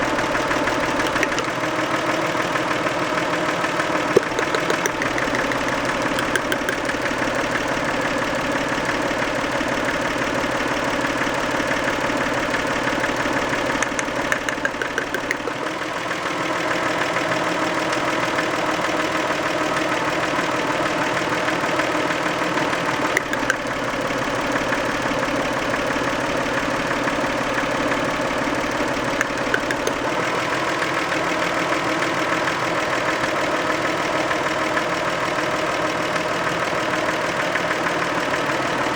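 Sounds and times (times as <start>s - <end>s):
rhythmic engine knock: 0.3s - 1.7s, 4.1s - 15.8s, 23.2s - 30.4s
car engine idling: 2.7s - 16.2s.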